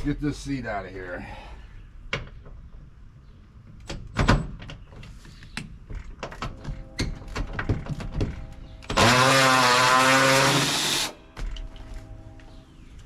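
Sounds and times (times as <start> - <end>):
tools and metal parts clunking: 3.7 - 9.0, 11.3 - 12.6.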